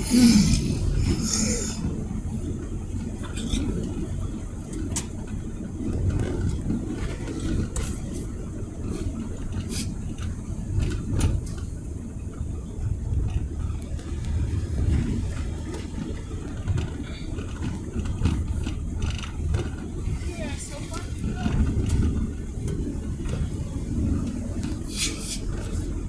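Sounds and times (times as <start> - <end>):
engine and road rumble: 0.0 - 26.0.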